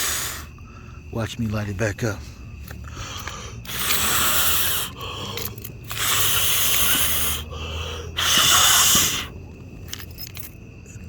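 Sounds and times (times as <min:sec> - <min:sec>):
firework hissing bursts: 0:00.0 - 0:00.5, 0:03.7 - 0:05.0, 0:05.9 - 0:07.5, 0:08.2 - 0:09.3.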